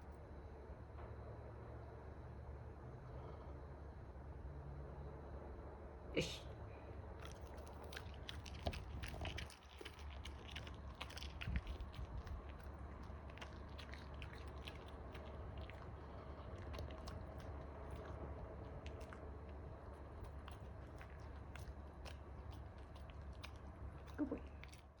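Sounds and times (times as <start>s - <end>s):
low hum: 0.0s - 25.0s
chewing and crunching: 6.9s - 25.0s.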